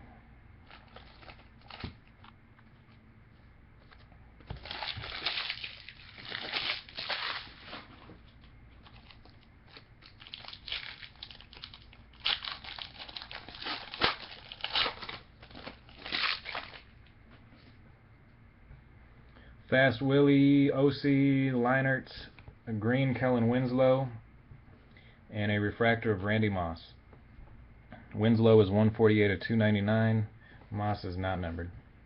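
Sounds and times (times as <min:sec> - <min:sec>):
wrapper crinkling and tearing: 0:00.6 - 0:02.3, 0:04.5 - 0:08.0, 0:08.8 - 0:16.9.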